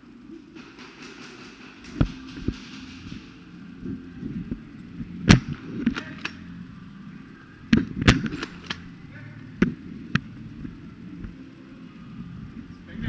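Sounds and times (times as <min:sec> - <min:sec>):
airsoft guns firing: 0:00.6 - 0:03.4, 0:05.3 - 0:06.5, 0:07.7 - 0:08.9
pellets hitting: 0:00.6 - 0:03.5.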